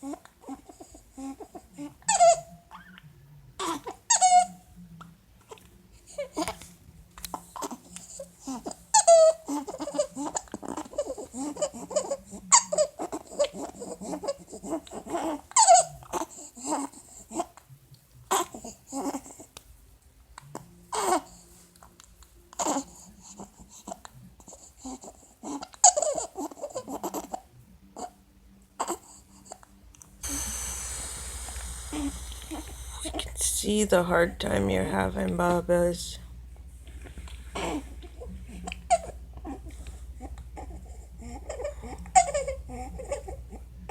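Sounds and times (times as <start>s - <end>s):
baby vocal sounds: 7.6s - 17.6s, 37.6s - 43.7s
baby breathing with squeaky stridor: 30.2s - 33.4s.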